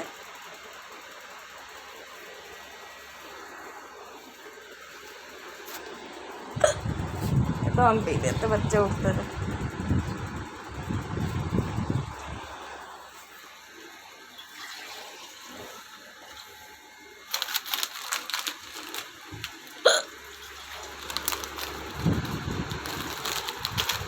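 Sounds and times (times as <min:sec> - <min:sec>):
woman hiccuping: 0:06.6 - 0:06.9, 0:19.8 - 0:20.2.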